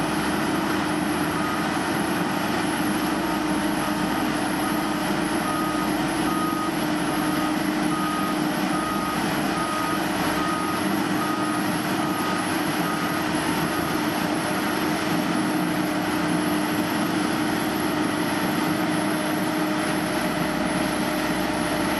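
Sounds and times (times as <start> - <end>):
truck engine humming: 0.0 - 21.9
reversing alarm beeping: 1.2 - 1.8, 3.9 - 19.8.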